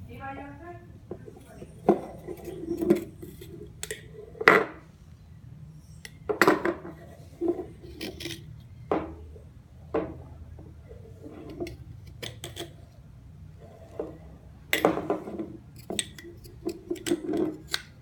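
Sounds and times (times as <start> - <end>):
dishes and utensils clattering: 13.9 - 18.0.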